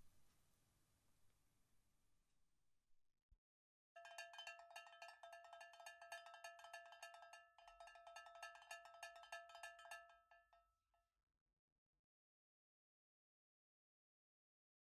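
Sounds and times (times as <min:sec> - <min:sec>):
rapid metallic bell strikes: 0:04.0 - 0:10.4.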